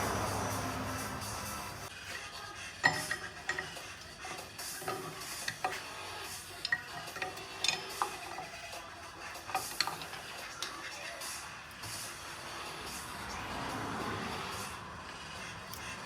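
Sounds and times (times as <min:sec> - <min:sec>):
light metallic clinks and taps: 0:02.8 - 0:08.8.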